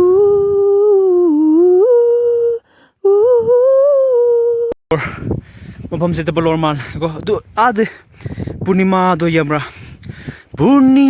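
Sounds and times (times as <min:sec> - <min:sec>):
person humming a slow tune: 0:00.0 - 0:04.8
breath: 0:02.6 - 0:03.0, 0:05.0 - 0:05.8, 0:07.9 - 0:08.6, 0:09.7 - 0:10.5.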